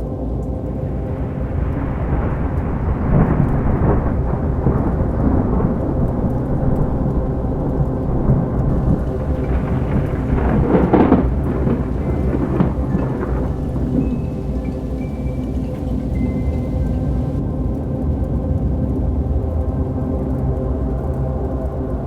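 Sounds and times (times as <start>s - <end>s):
steady rain: 0.0s - 22.0s
rolling thunder: 0.5s - 17.4s.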